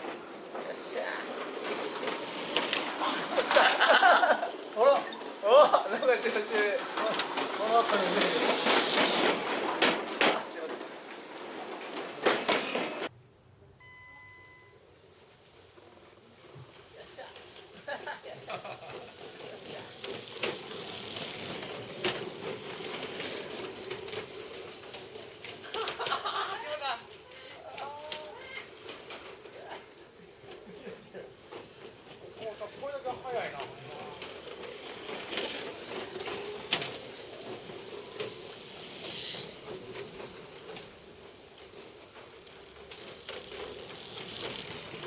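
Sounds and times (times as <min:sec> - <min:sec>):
toy cars clicking and clattering: 0:00.0 - 0:13.1, 0:16.4 - 0:45.0
small motor whir and hiss: 0:34.3 - 0:45.0.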